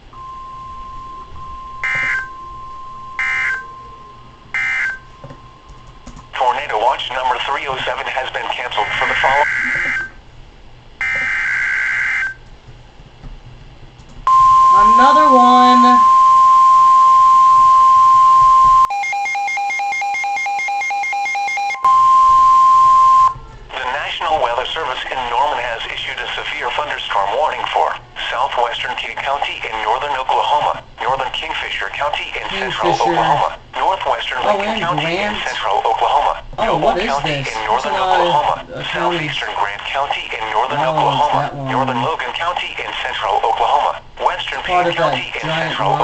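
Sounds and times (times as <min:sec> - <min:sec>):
steady single-pitch tone: 0:00.1 - 0:05.9, 0:14.3 - 0:23.4.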